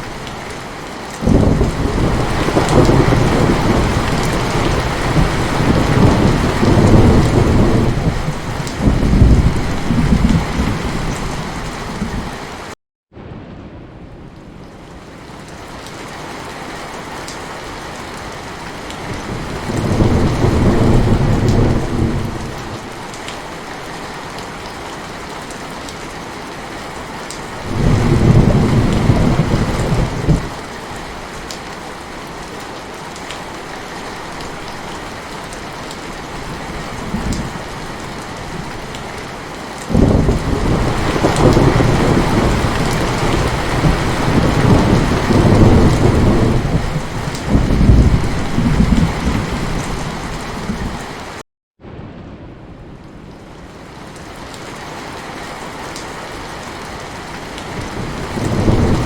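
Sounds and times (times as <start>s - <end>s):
thunder rumbling: 0.0s - 12.5s, 13.1s - 16.2s, 18.6s - 23.0s, 27.6s - 31.6s, 36.3s - 51.1s, 51.8s - 54.5s, 57.1s - 59.0s
heavy rain falling: 0.0s - 59.0s.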